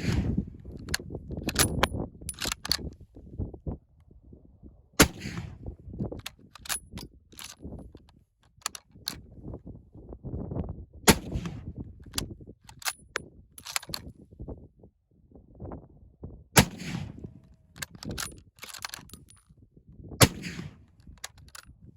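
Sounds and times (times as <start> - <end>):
wind buffeting microphone: 0.0 - 21.9
small clicks and knocks: 0.7 - 2.9, 6.0 - 9.2, 12.0 - 14.1, 17.8 - 19.4, 21.0 - 21.7.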